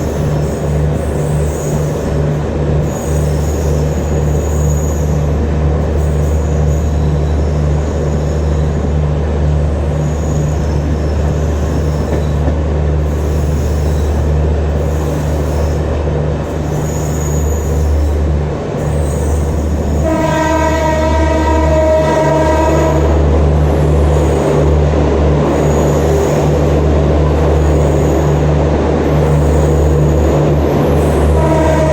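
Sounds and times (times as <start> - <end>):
train wheels rumbling on rail: 0.0 - 31.9.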